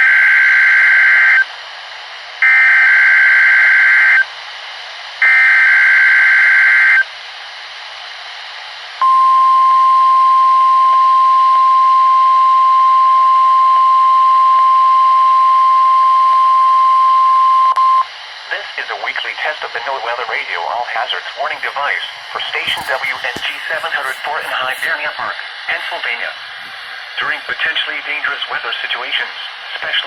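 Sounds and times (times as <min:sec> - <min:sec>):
steady warning alarm tone: 0:00.0 - 0:01.4, 0:02.4 - 0:04.2, 0:05.2 - 0:07.0.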